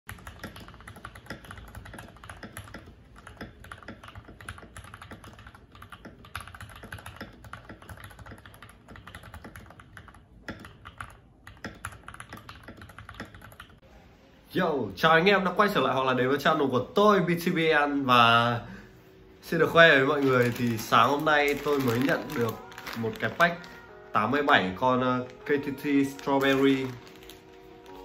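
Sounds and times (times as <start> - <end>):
fast typing on mechanical keyboard: 0.1 - 13.8, 20.2 - 23.4.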